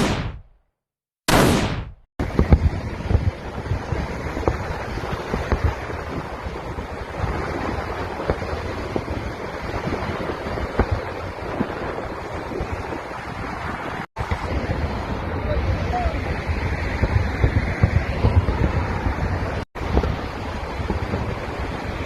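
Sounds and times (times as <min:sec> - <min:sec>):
sharp firework pops and cracks: 0:00.0 - 0:00.5, 0:01.3 - 0:12.2
distant firework bursts rumbling: 0:01.3 - 0:22.0.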